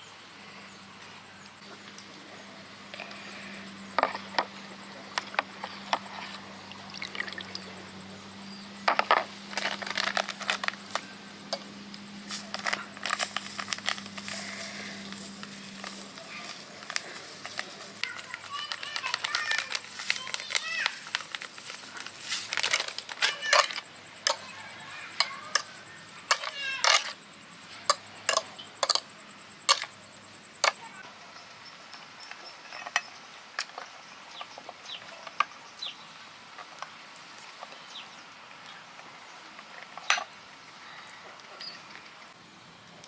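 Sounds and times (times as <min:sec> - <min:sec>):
sharp knocks and scrapes: 0:21.0 - 0:27.2, 0:27.8 - 0:30.0.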